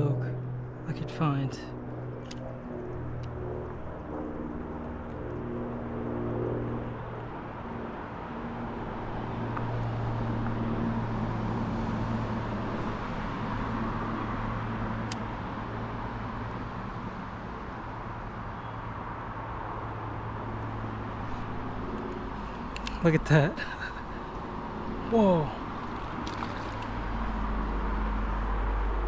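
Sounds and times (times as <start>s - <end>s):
stream flowing: 20.7s - 29.0s.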